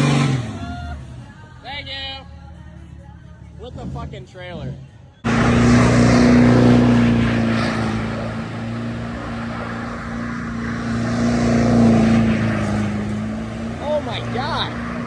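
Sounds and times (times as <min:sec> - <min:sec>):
diesel truck engine running: 0:05.2 - 0:15.0.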